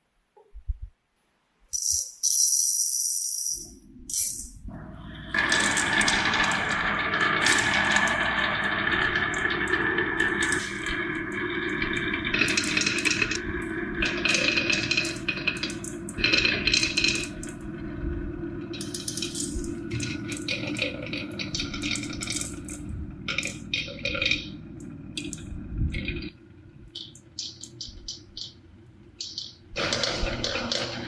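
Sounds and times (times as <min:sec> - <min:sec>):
steady low hum: 0:03.6 - 0:31.0
marbles rolling on plastic track: 0:05.4 - 0:17.6, 0:18.8 - 0:22.8.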